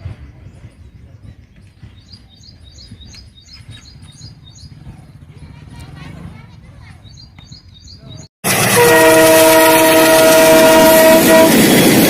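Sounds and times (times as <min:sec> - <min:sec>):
small birds chirping: 0:00.1 - 0:05.9, 0:06.7 - 0:08.3.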